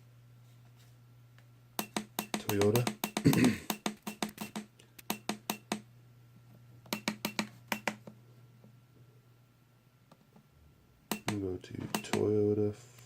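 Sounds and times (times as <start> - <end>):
low steady hum: 0.0 - 13.0
keypad button clicks: 1.8 - 5.8, 6.9 - 8.0, 11.1 - 12.3.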